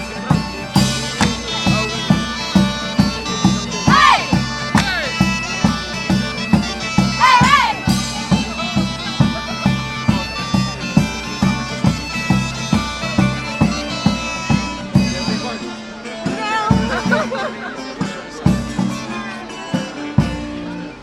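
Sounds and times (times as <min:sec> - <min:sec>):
drum beat: 0:00.0 - 0:15.6
bagpipes playing a tune: 0:00.0 - 0:21.0.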